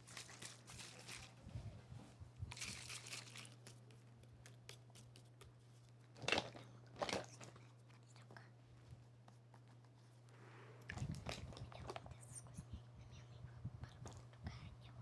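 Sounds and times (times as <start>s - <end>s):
scratchy crinkling of makeup products: 0.0s - 1.4s, 2.5s - 3.8s
faint steady hum: 0.0s - 15.0s.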